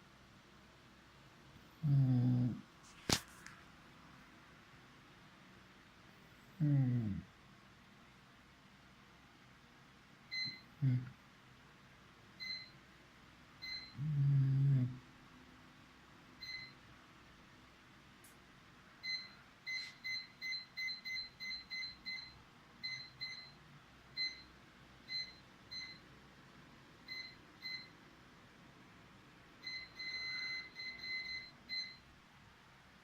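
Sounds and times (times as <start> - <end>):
short electronic beeps: 29.6 - 32.0.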